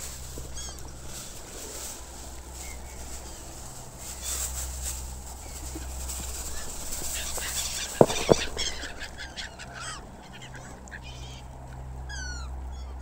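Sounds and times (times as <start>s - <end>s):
gulls calling: 0.0s - 13.0s
sharp knocks: 7.2s - 9.1s.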